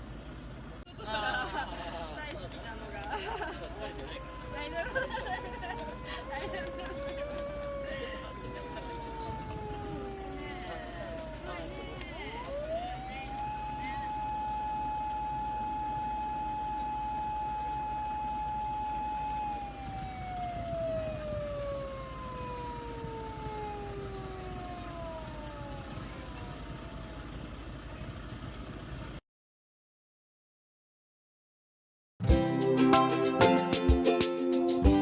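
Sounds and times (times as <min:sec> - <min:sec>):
police siren wailing: 0:01.1 - 0:28.9.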